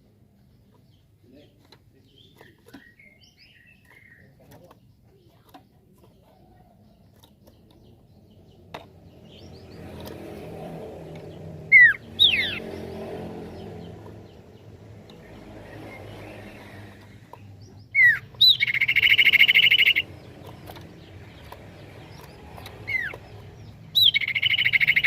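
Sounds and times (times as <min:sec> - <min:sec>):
bird chirps and whistled notes: 0:11.7 - 0:12.7, 0:17.6 - 0:20.1, 0:22.8 - 0:23.2, 0:23.9 - 0:25.0.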